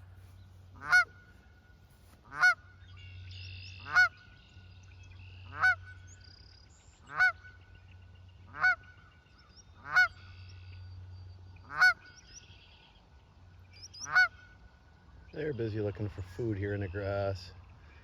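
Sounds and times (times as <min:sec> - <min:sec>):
faint bird calls: 0:00.0 - 0:18.0
low steady hum: 0:00.0 - 0:18.0
goose honking: 0:00.7 - 0:01.4, 0:02.2 - 0:02.7, 0:03.8 - 0:04.2, 0:05.5 - 0:06.1, 0:07.1 - 0:07.6, 0:08.5 - 0:09.1, 0:09.8 - 0:10.4, 0:11.6 - 0:12.1, 0:14.0 - 0:14.6.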